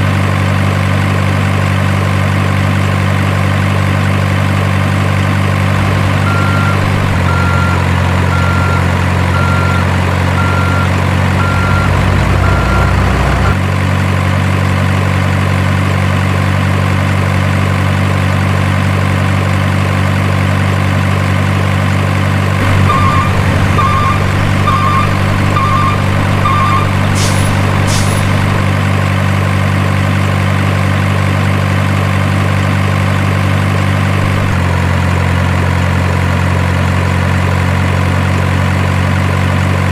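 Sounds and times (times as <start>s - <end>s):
electronic truck engine idling: 5.2s - 13.6s, 22.0s - 29.6s, 33.0s - 34.6s
reversing beeps: 6.1s - 13.6s, 22.6s - 28.7s
short double beeps: 22.6s - 28.7s
air-brake hisses: 27.1s - 28.6s.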